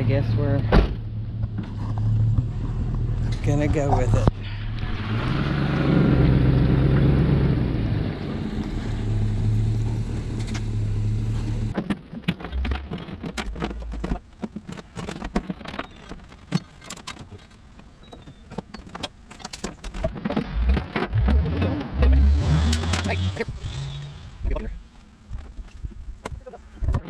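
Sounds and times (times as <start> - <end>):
vehicle engine running: 0.0 - 11.8.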